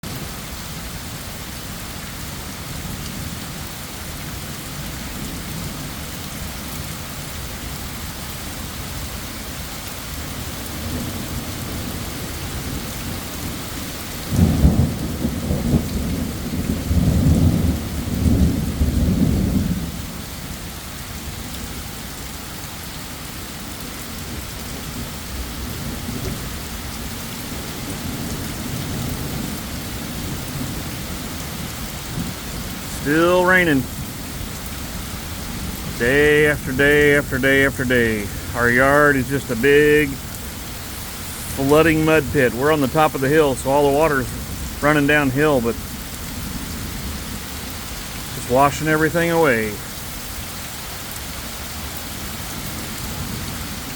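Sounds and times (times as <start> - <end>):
steady rain falling: 0.0 - 53.9
thunder rumbling: 10.8 - 20.2, 25.3 - 48.8.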